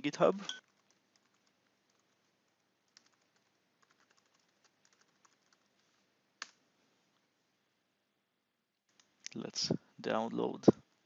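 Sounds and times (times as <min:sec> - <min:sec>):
faint typing on computer keyboard: 0:00.5 - 0:06.6.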